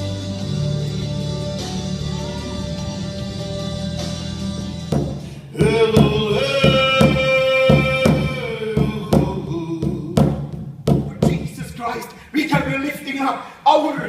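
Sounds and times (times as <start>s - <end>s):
drum beating: 1.6s - 12.0s
person singing long notes: 5.4s - 10.6s.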